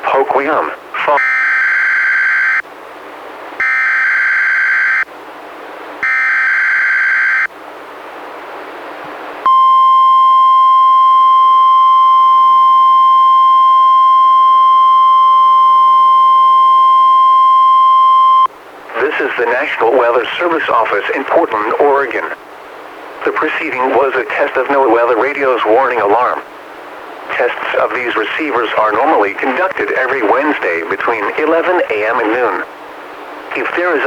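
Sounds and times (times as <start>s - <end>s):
radio hiss: 0.0s - 1.2s, 18.8s - 34.0s
steady warning alarm tone: 1.2s - 2.6s, 3.6s - 5.1s, 6.0s - 7.5s, 9.5s - 18.5s.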